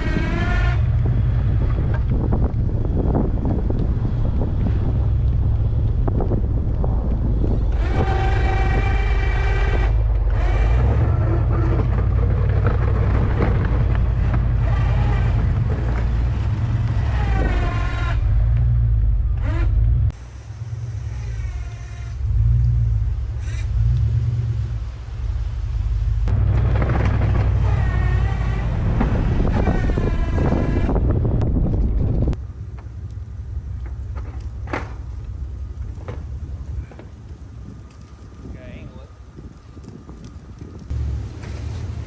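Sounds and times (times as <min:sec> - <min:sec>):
pickup truck engine rumbling: 0:00.0 - 0:42.0.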